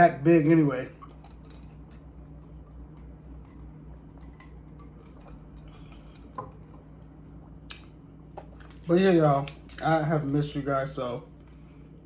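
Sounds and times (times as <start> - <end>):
steady low hum: 0.0 - 12.0
clicks and crackles of eating: 0.9 - 9.9.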